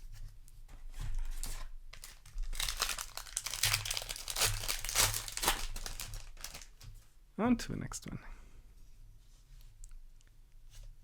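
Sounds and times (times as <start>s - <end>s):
foil wrapper crinkling: 1.2s - 7.0s.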